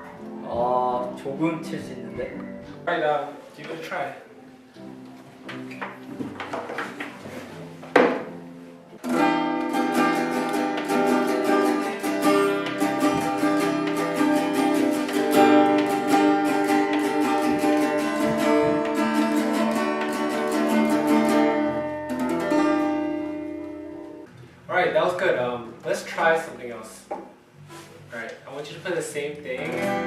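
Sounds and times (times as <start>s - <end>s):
guitar strumming chords: 0.0s - 2.9s, 8.0s - 26.9s, 29.4s - 30.0s.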